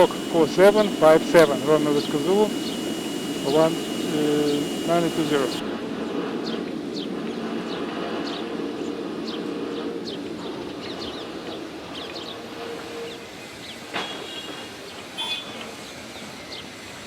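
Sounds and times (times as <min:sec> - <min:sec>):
low mechanical hum: 0:00.0 - 0:05.6
short tone: 0:00.0 - 0:05.6
small birds chirping: 0:00.0 - 0:05.6.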